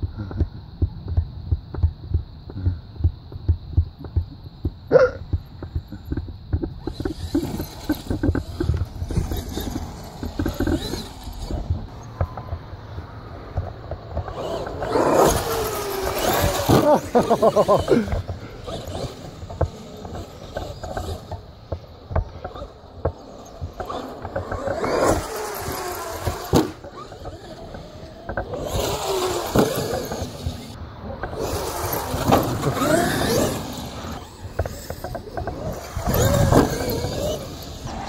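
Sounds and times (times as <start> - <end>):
toy trucks clattering on ground: 5.5 - 12.6, 13.3 - 38.0
electric motors whining: 5.8 - 38.0.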